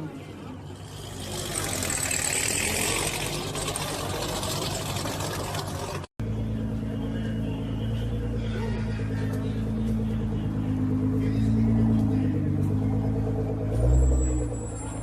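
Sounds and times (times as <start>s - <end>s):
car engine running low: 0.1s - 15.0s
loud sports car engine: 0.1s - 15.0s.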